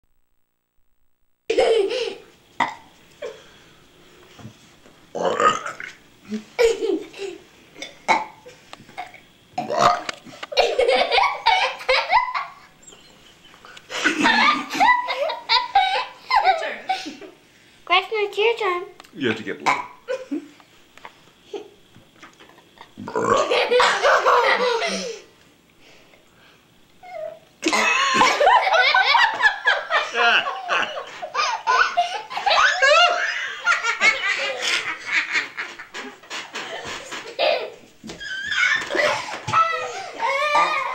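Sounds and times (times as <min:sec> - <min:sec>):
laughter: 0:01.5 - 0:02.3, 0:06.5 - 0:07.4, 0:10.5 - 0:12.7, 0:13.9 - 0:17.4, 0:22.4 - 0:25.2, 0:27.7 - 0:37.8, 0:38.4 - 0:40.9
person burping: 0:02.6 - 0:02.9, 0:05.2 - 0:06.0, 0:07.8 - 0:08.4, 0:09.6 - 0:10.2, 0:23.0 - 0:23.5, 0:27.6 - 0:28.2
person belching: 0:05.2 - 0:06.0, 0:09.6 - 0:10.1, 0:23.0 - 0:23.5, 0:27.6 - 0:28.0.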